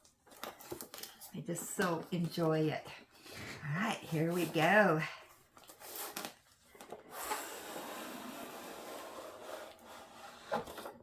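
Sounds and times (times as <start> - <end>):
cardboard sliding and rustling: 5.6 - 11.0.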